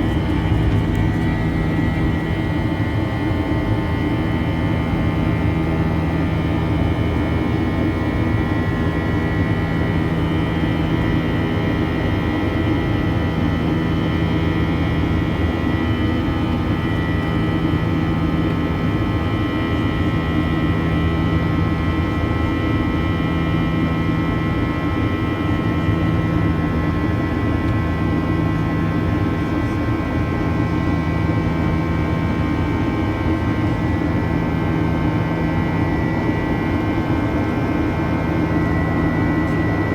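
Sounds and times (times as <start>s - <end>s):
steady whining tones: 0.0s - 5.4s
jet engines droning in cabin: 0.0s - 39.9s.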